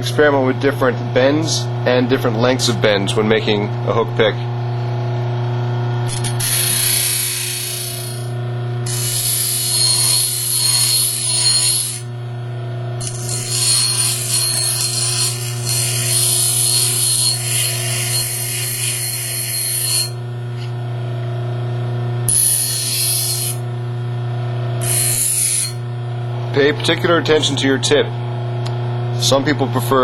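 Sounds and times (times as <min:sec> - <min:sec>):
bench grinder humming: 0:04.4 - 0:28.8
steel grinding hiss: 0:06.1 - 0:08.3, 0:08.9 - 0:12.1.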